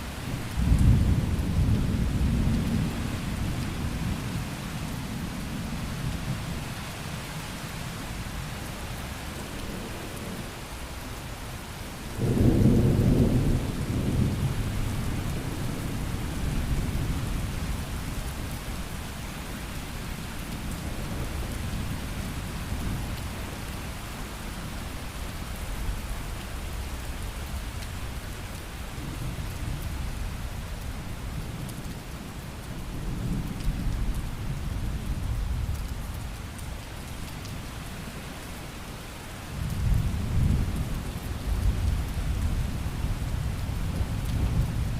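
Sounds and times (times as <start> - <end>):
steady rain: 0.0 - 44.9
rolling thunder: 12.2 - 17.5.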